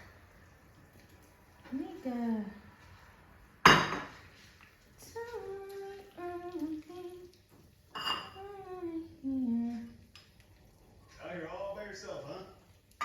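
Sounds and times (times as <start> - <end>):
woman humming: 8.4 - 10.0.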